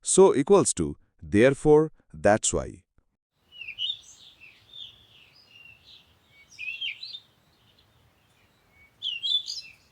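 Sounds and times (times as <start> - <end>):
birds chirping and twittering: 3.4 - 9.9.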